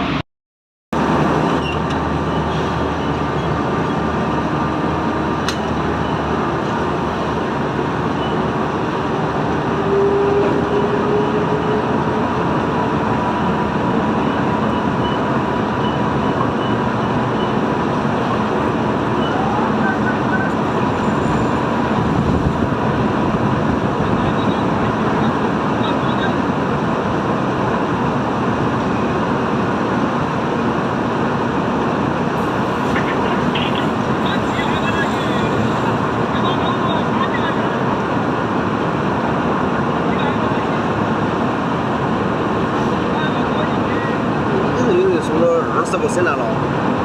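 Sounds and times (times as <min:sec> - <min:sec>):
heavy machinery engine running: 0:10.5 - 0:45.1.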